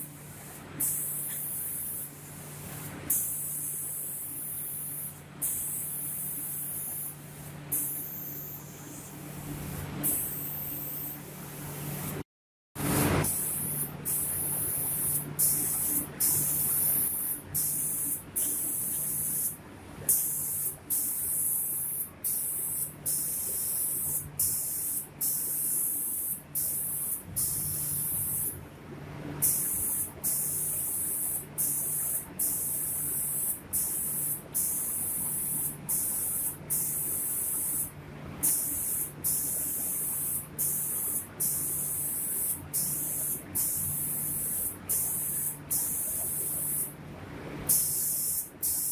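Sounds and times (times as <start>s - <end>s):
spray guns hissing: 29.4s - 46.9s, 47.7s - 48.9s
low machine hum: 46.0s - 47.7s.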